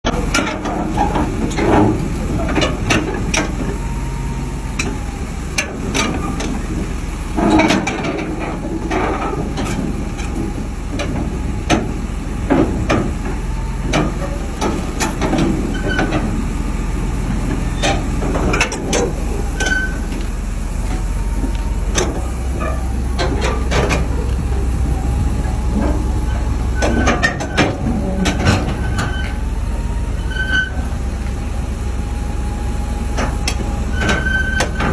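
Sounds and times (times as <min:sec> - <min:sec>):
heavy machine rumbling: 0:00.0 - 0:34.9
metallic clanks and knocks: 0:05.6 - 0:16.4, 0:17.3 - 0:29.4.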